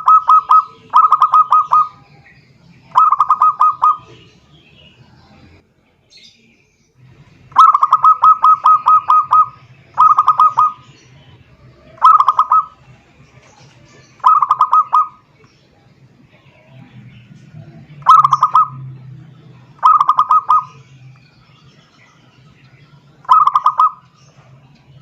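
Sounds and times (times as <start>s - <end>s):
dove cooing song: 0.0s - 2.3s, 2.9s - 4.3s, 7.5s - 15.3s, 17.9s - 19.0s, 19.7s - 21.0s, 23.2s - 24.6s.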